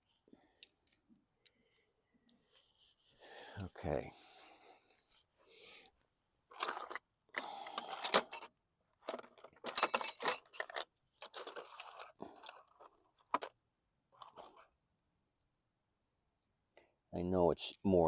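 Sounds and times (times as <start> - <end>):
metal sockets clinking and rattling: 6.6 - 8.5, 9.1 - 12.6.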